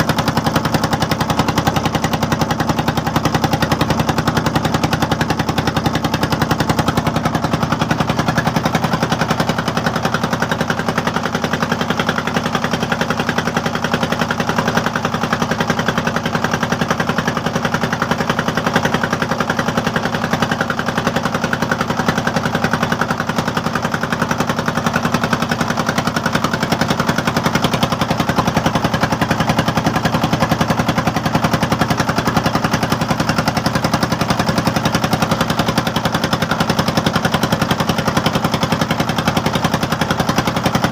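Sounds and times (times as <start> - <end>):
boat engine chugging: 0.0 - 40.9.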